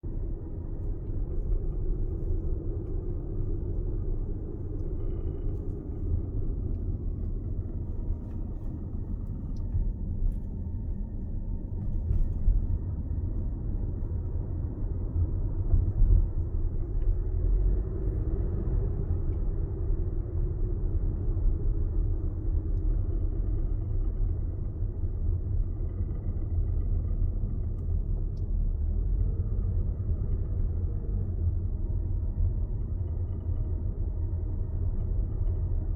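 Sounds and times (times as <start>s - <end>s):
car rumbling on the move: 0.0s - 35.9s.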